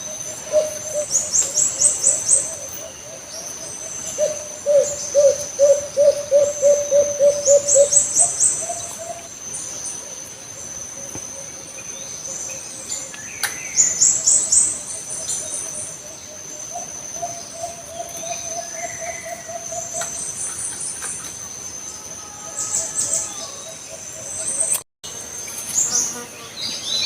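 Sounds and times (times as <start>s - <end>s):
dove hooting: 0.0s - 9.3s.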